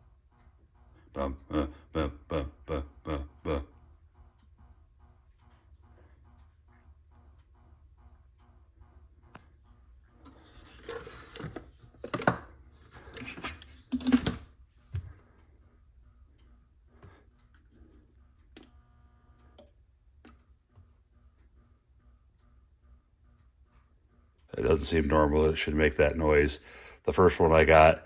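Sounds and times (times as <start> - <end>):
faint pulsing whine: 0.0 - 28.0
battery charger humming: 9.0 - 15.2.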